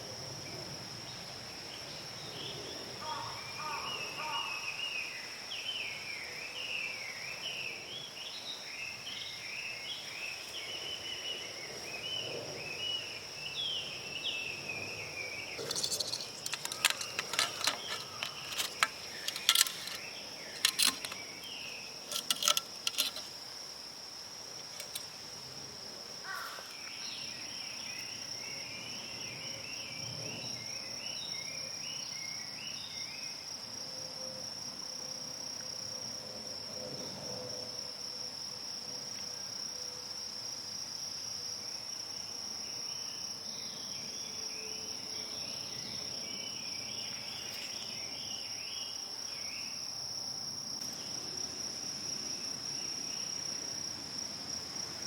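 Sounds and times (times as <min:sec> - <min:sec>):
insects shrilling drone: 0:00.0 - 0:55.0
sharp clicks and knocks: 0:15.6 - 0:23.4, 0:24.7 - 0:25.1.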